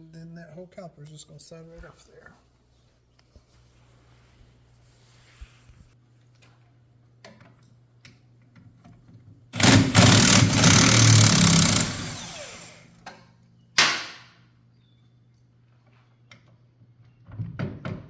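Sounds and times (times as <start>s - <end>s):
power tool running: 9.6s - 13.0s.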